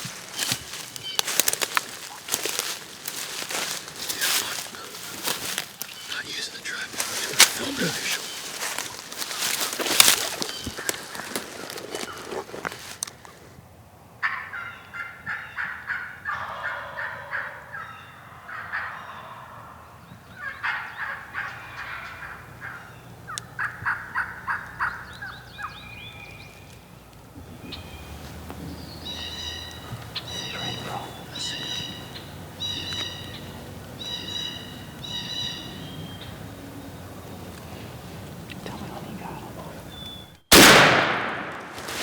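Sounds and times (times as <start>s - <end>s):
rustling handling noise: 0.0s - 13.5s, 41.6s - 42.0s
turkey calls: 0.0s - 13.5s, 14.2s - 40.4s.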